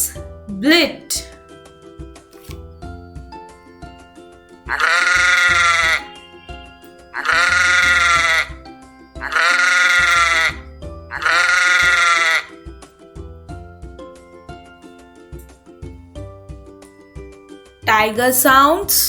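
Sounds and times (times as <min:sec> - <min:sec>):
light background music: 0:00.0 - 0:19.0
sheep bleating: 0:04.7 - 0:08.6, 0:09.2 - 0:12.6.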